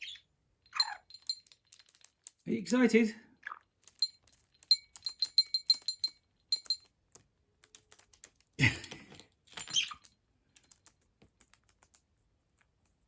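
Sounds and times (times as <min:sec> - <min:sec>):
small bell jingling: 0:00.7 - 0:02.5, 0:03.8 - 0:06.9, 0:08.6 - 0:10.1.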